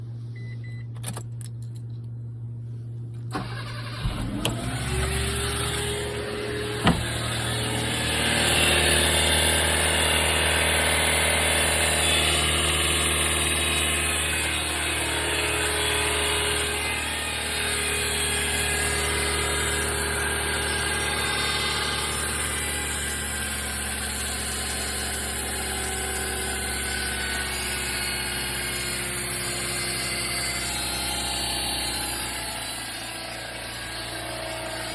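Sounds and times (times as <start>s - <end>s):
engine idling with whine: 0.0s - 34.9s
car engine cranking and starting: 3.3s - 9.9s.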